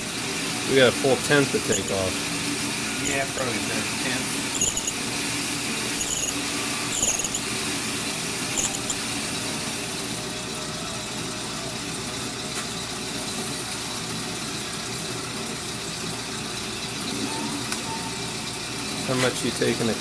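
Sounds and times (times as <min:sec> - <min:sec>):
faint steady whine: 0:00.0 - 0:10.5.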